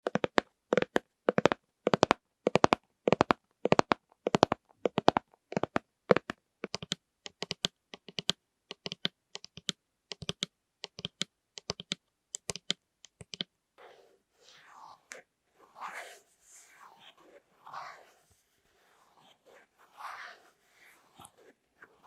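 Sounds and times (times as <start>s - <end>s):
soft rustling: 13.8s - 22.0s.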